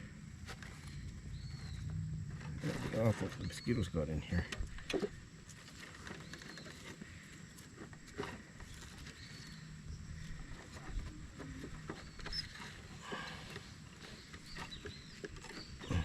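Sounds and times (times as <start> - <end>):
bird chirps: 1.2 - 2.0.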